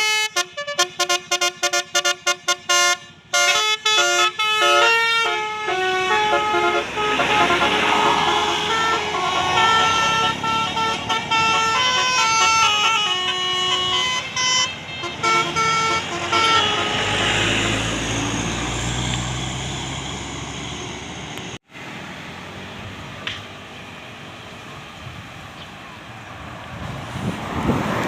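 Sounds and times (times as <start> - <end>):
musical vehicle horn tune: 0.0 - 17.8.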